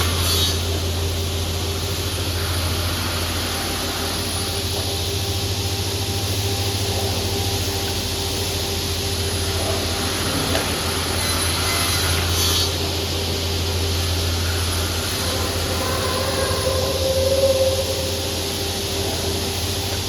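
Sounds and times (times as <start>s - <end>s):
saw motor humming: 9.5s - 20.0s.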